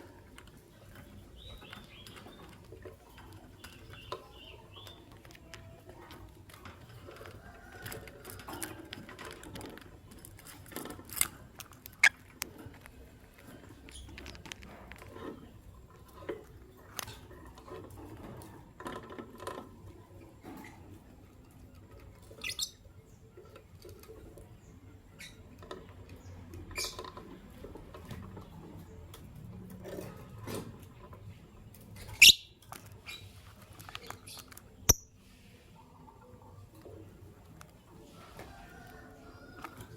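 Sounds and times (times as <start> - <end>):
lovebirds chirping: 0.0 - 6.0, 22.3 - 23.4, 31.4 - 35.4
birds scratching and pecking: 0.0 - 39.9.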